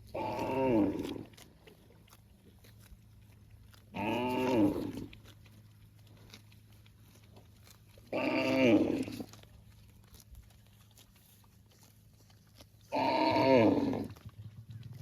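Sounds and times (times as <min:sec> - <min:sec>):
cow mooing: 0:00.1 - 0:01.3, 0:03.9 - 0:05.1, 0:08.1 - 0:09.2, 0:12.9 - 0:15.0.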